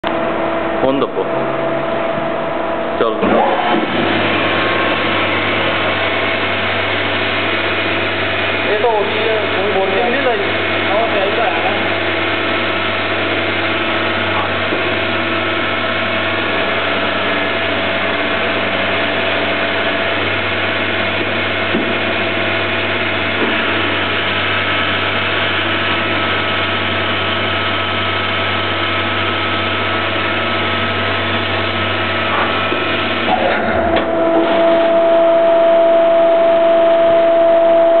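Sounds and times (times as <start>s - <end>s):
lathe machine hum: 0.0s - 38.0s
loud steady machine whine: 0.0s - 38.0s.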